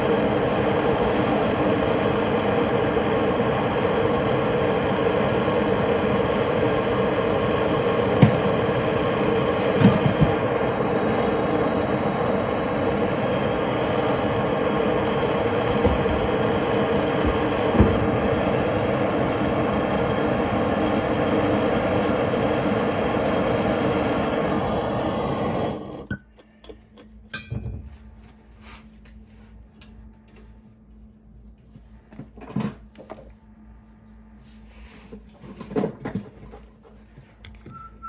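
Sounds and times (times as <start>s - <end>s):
torch flame burning: 0.0s - 26.1s.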